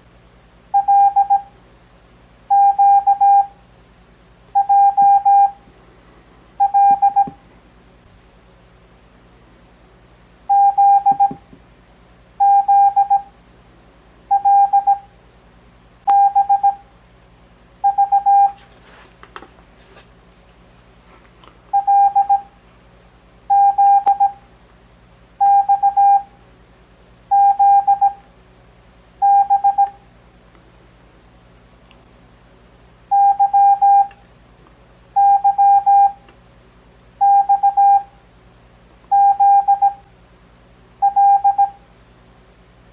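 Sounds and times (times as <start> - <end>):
faint steady hum: 0.0 - 42.9
morse code tone: 0.8 - 1.5, 2.5 - 3.6, 4.6 - 5.6, 6.6 - 7.4, 10.5 - 11.4, 12.4 - 13.3, 14.3 - 15.1, 16.1 - 16.8, 17.8 - 18.6, 21.7 - 22.5, 23.5 - 24.4, 25.4 - 26.3, 27.3 - 28.2, 29.2 - 30.0, 33.1 - 34.1, 35.2 - 36.2, 37.2 - 38.1, 39.1 - 40.0, 41.0 - 41.8.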